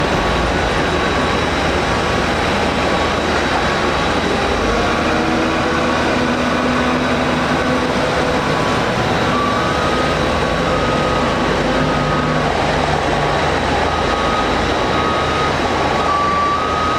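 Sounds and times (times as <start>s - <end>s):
faint engine whine: 0.0s - 16.9s
passenger jet taking off: 0.0s - 16.9s.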